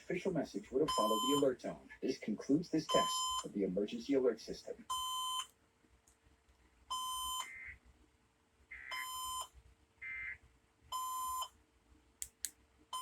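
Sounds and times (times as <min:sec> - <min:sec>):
electronic beeps: 0:00.9 - 0:01.5, 0:02.9 - 0:03.5.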